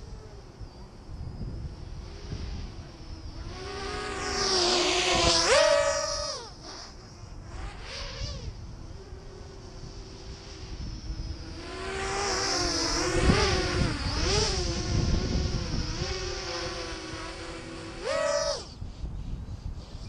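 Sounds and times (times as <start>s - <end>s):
quadcopter motors whining: 0.0s - 20.0s.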